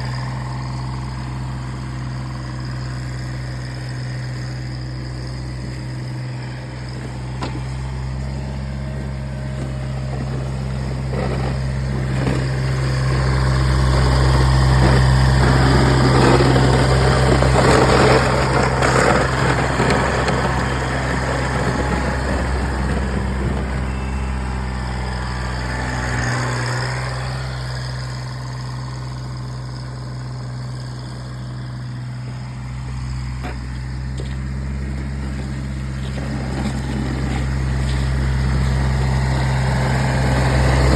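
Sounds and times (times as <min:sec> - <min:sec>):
diesel tractor engine running: 0:00.0 - 0:40.9
rushing scraping noise: 0:35.2 - 0:40.9.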